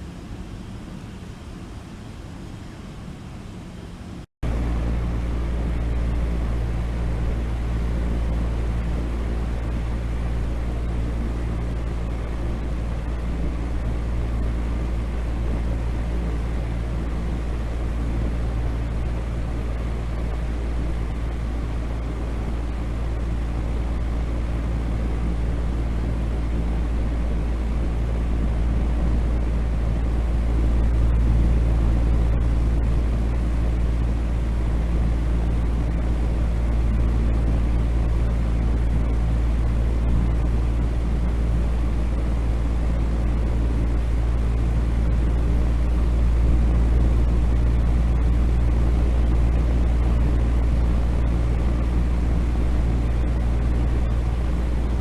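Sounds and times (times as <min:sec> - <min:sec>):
deep steady noise: 0:00.0 - 0:04.8, 0:20.4 - 0:55.0
faint steady hum: 0:00.0 - 0:55.0.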